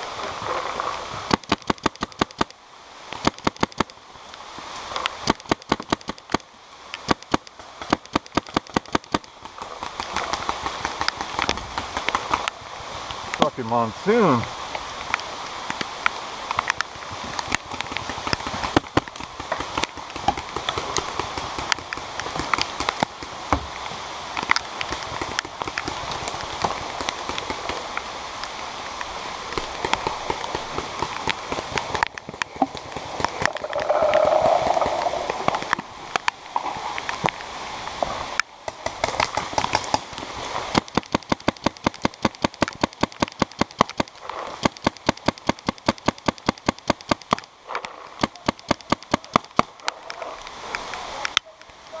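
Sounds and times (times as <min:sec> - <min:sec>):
heavy rain pattering: 0:00.0 - 0:52.0
sharp clicks: 0:40.7 - 0:47.5.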